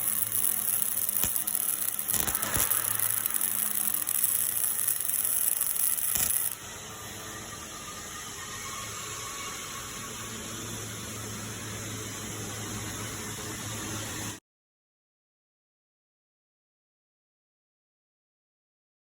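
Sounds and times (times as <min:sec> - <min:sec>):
welding arc crackling and hissing: 0:00.0 - 0:06.6
low hum: 0:00.0 - 0:07.2.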